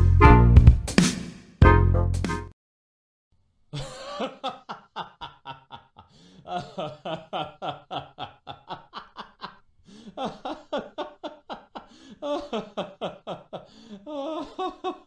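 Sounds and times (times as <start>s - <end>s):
person laughing in rhythmic bursts: 3.7s - 15.0s.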